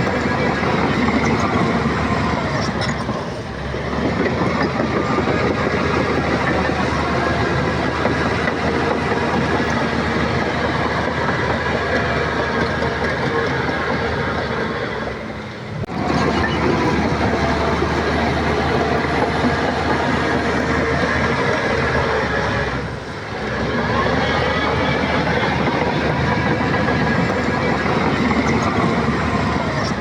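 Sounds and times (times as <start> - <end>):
bulldozer diesel engine: 0.0 - 30.0
steel tracks clattering: 0.0 - 30.0.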